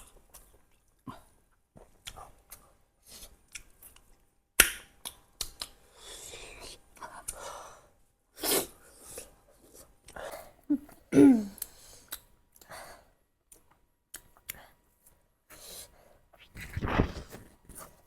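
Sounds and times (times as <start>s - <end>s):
chewing and wet mouth noises: 0.0s - 4.2s, 11.6s - 12.8s, 13.5s - 15.2s.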